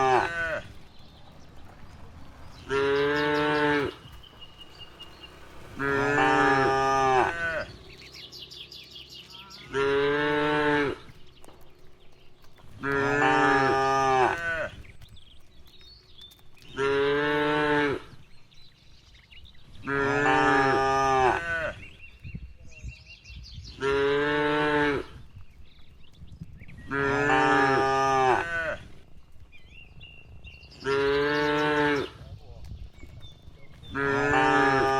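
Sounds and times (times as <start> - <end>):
cattle mooing: 0.0 - 1.0, 2.5 - 8.1, 9.3 - 11.2, 12.8 - 14.8, 16.7 - 18.2, 19.9 - 21.8, 23.8 - 25.2, 26.9 - 28.9, 30.8 - 32.2, 33.8 - 34.9.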